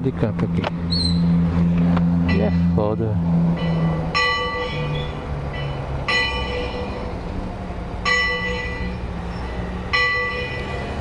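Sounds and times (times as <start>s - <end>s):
low engine hum: 0.0s - 11.0s
bell ringing: 3.6s - 7.2s, 8.0s - 11.0s.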